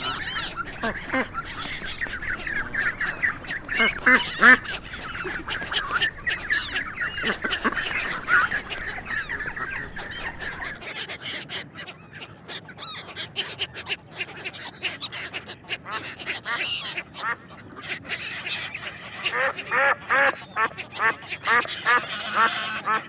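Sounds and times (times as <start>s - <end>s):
background hiss: 0.0s - 10.8s
ducks quacking: 0.0s - 11.8s, 12.9s - 23.0s.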